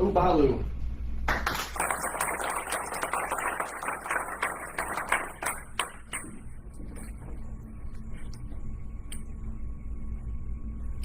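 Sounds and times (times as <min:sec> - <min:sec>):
audience applauding: 0:01.3 - 0:06.5.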